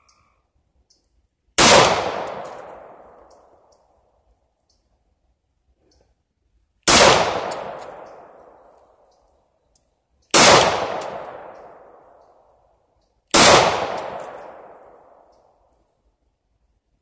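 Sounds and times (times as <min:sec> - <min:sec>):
pistol shots: 0:01.6 - 0:03.3, 0:06.9 - 0:08.6, 0:10.3 - 0:12.1, 0:13.3 - 0:15.2.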